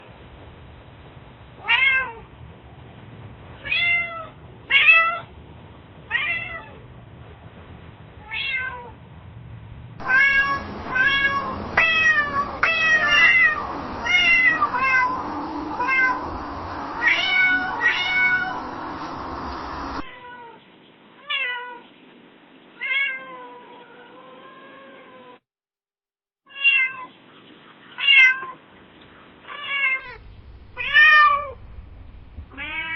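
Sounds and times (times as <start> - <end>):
cat meowing: 1.6 - 2.2, 8.2 - 8.9, 10.0 - 16.3, 17.0 - 18.6, 21.2 - 21.8, 22.8 - 25.4, 26.5 - 27.1, 28.0 - 28.6, 29.4 - 30.2, 30.8 - 31.6, 32.5 - 32.9.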